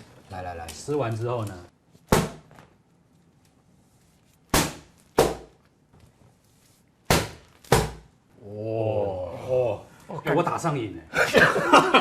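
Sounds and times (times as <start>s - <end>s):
prop slapping strikes: 4.5s - 5.5s, 7.1s - 8.1s.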